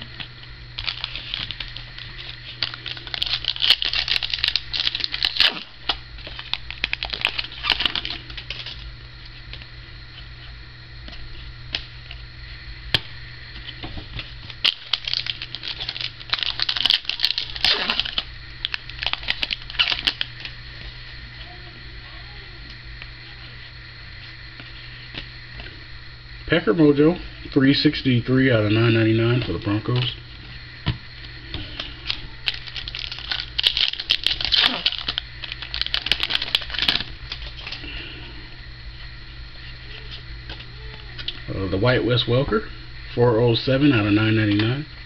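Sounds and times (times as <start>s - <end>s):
steady low hum: 0.0s - 45.0s
card packs crinkling: 0.8s - 8.9s, 13.6s - 20.6s, 31.2s - 37.9s.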